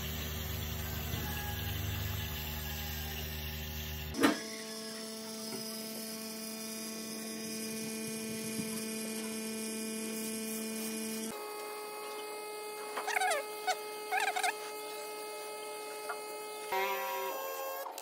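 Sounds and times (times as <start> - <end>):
electrical hum: 0.0 - 18.0.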